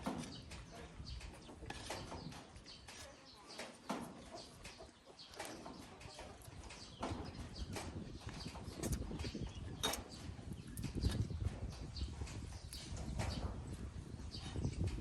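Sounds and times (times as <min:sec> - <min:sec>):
wind rumble on microphone: 0:05.7 - 0:15.0.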